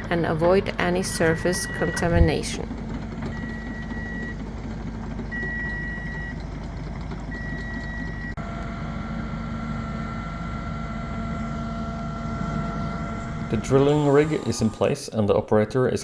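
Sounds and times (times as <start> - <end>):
diesel engine running: 0.0 - 15.7
reversing alarm beeping: 0.3 - 4.4, 5.3 - 6.4, 7.3 - 8.4
steady high whine: 12.6 - 15.7.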